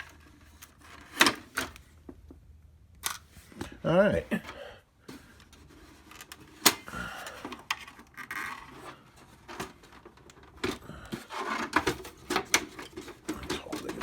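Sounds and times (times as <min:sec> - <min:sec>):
plastic parts scraping: 0:00.0 - 0:02.0, 0:03.0 - 0:14.0
plastic parts clicking: 0:03.0 - 0:03.3.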